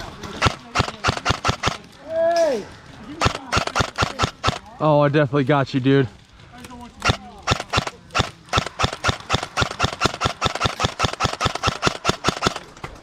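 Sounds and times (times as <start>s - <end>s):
airsoft gun rapid firing: 0.3s - 1.9s, 3.2s - 4.7s, 7.0s - 12.8s.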